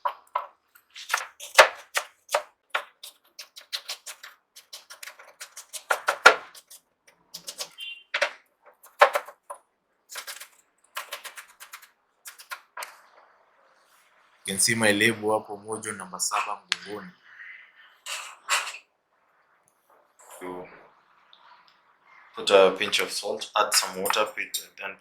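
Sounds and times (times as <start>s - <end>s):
knife chopping on cutting board: 0.1s - 6.7s, 7.4s - 9.4s.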